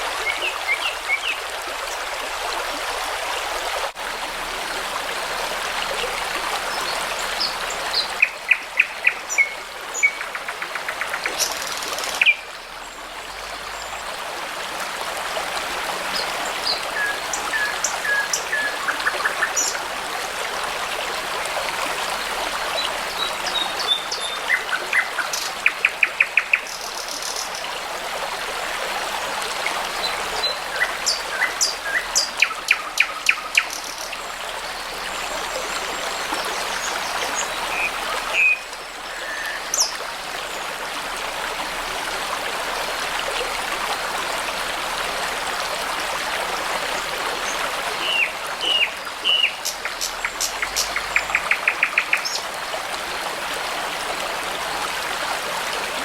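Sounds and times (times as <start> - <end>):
brook babbling: 0.0 - 56.0
songbirds singing: 22.8 - 27.7, 29.6 - 40.0, 47.4 - 52.5.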